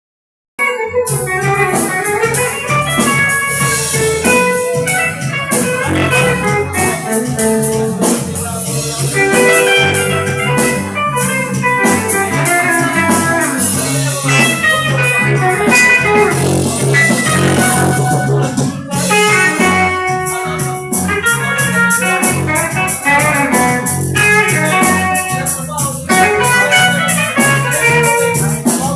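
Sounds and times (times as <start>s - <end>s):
live band playing: 0.6s - 28.9s
organ chords: 0.9s - 8.1s, 8.9s - 22.8s.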